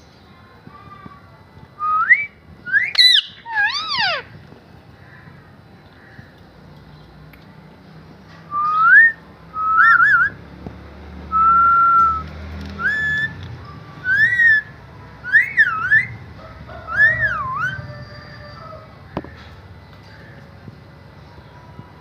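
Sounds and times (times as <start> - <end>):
parrot whistling: 1.8 - 4.3, 8.5 - 10.4, 12.8 - 13.4, 14.0 - 16.1.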